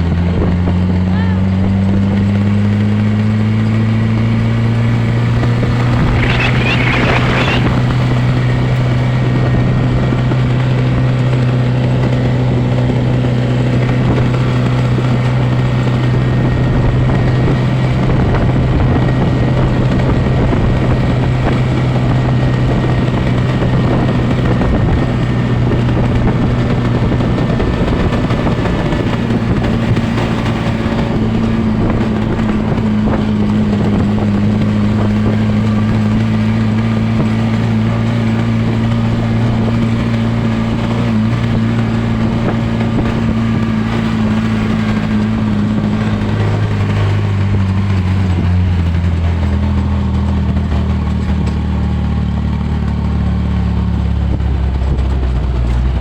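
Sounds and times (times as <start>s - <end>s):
engine running steadily: 0.0s - 56.0s
wavering high-pitched sound: 5.8s - 7.8s.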